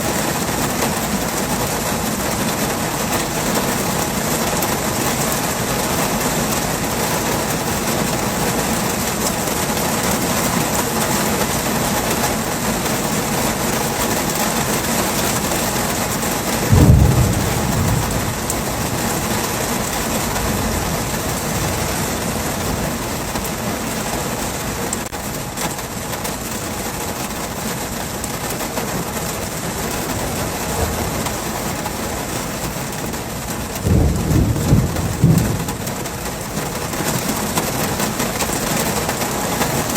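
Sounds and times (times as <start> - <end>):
heavy rain pouring: 0.0 - 39.9
low rumble: 16.7 - 23.1.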